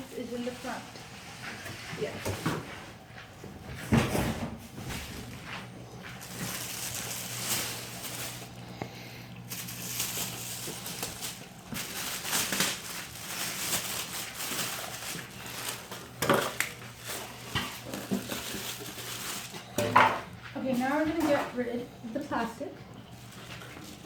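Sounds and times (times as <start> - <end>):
packaging rustling and crinkling: 3.8 - 21.5, 23.1 - 24.0.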